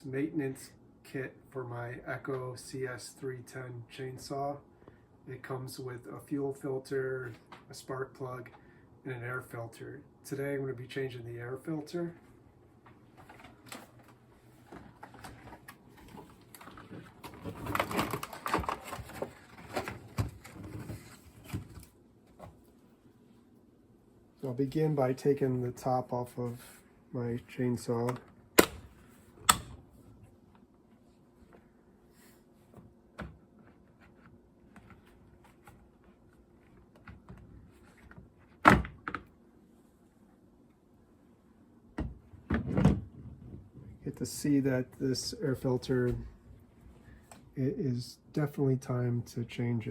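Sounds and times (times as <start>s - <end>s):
clicks and knocks of objects handled: 12.9s - 22.7s.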